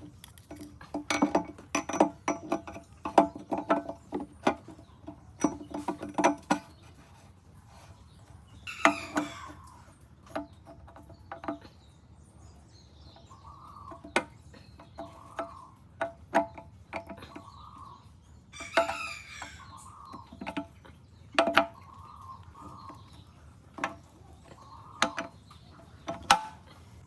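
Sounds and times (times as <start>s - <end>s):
hens clucking: 8.0s - 11.8s, 13.2s - 27.0s
rooster crowing: 8.7s - 9.7s, 18.6s - 19.8s.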